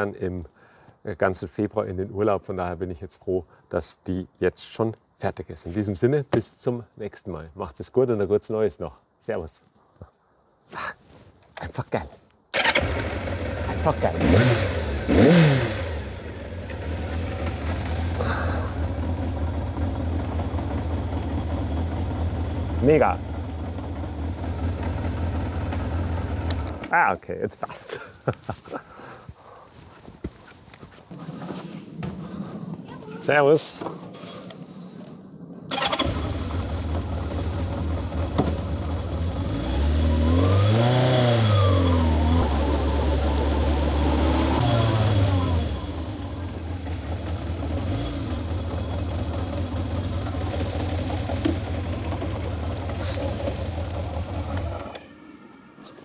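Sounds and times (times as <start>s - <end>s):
motorcycle engine idling: 12.6s - 26.8s, 35.8s - 39.6s, 44.8s - 55.0s.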